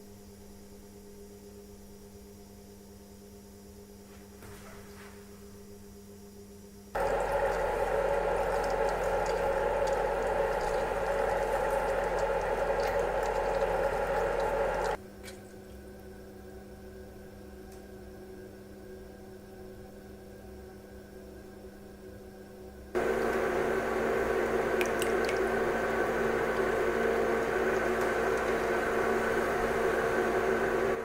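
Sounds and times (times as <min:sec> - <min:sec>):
faint steady hum: 0:00.0 - 0:31.0
churning crackling water: 0:07.0 - 0:15.0, 0:23.0 - 0:31.0
circulator humming: 0:07.0 - 0:15.0, 0:23.0 - 0:31.0.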